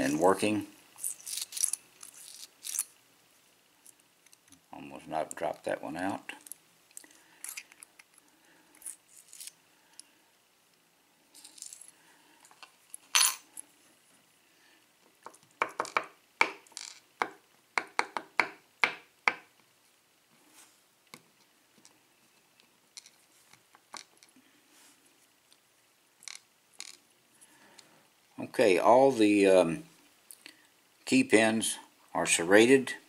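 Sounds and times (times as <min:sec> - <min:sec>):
metal pins clinking on hard surface: 0:13.1 - 0:13.5.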